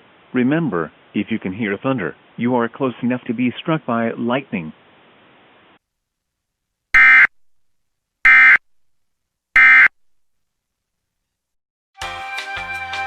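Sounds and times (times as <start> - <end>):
digital data tone bursts: 7.0 - 7.4, 8.3 - 8.6, 9.6 - 10.0.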